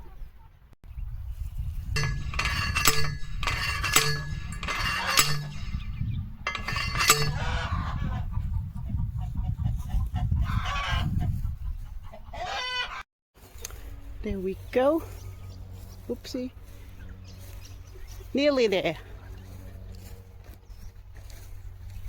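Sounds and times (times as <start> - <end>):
steady low rumble: 1.0 - 12.4, 13.4 - 22.0
chickens clucking and squawking: 7.3 - 13.0.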